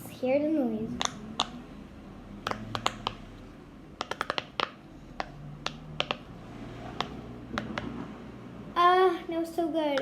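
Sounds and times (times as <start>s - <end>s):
fidget toy bubbles popping: 2.4s - 3.2s, 4.0s - 6.3s.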